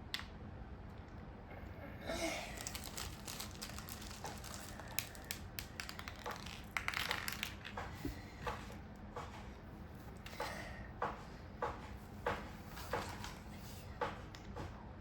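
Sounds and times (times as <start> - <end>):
plastic packaging rustling: 2.3 - 8.8
craft pieces clicking: 2.8 - 8.7.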